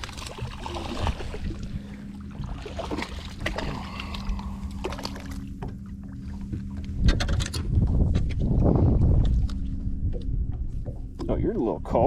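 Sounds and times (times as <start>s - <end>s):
low hum: 0.0s - 12.0s
fishing tackle clicks and knocks: 6.9s - 8.5s.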